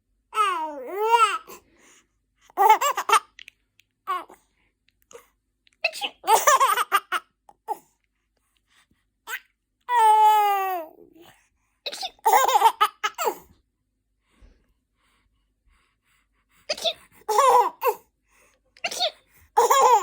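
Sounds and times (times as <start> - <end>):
baby laughing: 2.6 - 3.4, 5.9 - 7.3, 11.9 - 13.4, 16.7 - 18.0, 18.9 - 20.0.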